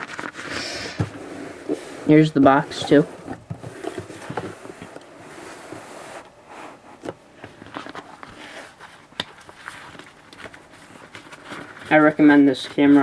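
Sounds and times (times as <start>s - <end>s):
cardboard box rustling and scraping: 0.0s - 13.0s.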